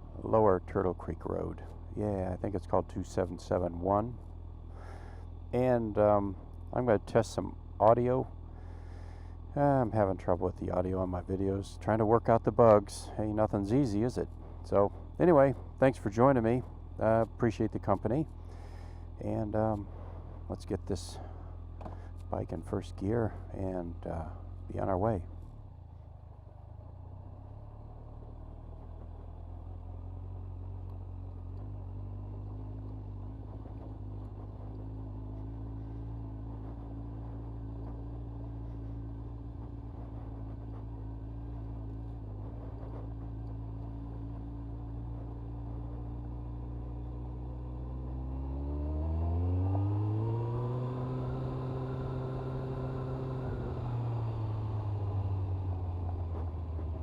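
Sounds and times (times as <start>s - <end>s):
motorcycle engine revving: 11.8s - 57.0s.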